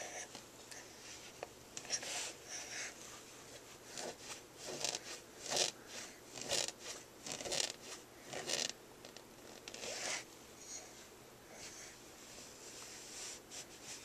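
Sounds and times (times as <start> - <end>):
fingernails scratching a surface: 3.9 - 10.2.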